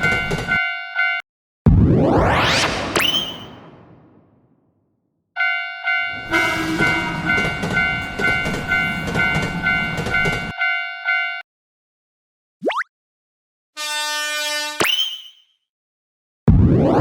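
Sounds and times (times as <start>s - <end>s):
railroad crossing bell ringing: 0.0s - 1.2s, 5.4s - 11.4s
quick rising swoop: 1.8s - 4.4s
train rumbling past: 6.1s - 10.5s.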